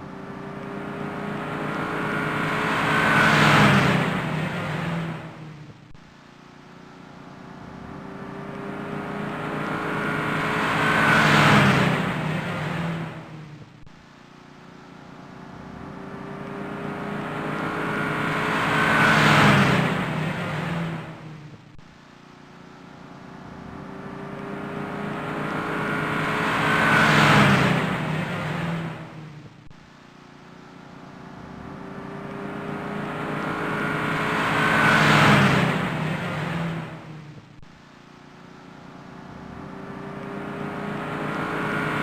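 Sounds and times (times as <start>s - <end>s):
car driving past: 0.8s - 5.5s, 8.2s - 13.5s, 16.1s - 21.4s, 24.0s - 29.4s, 31.8s - 37.4s.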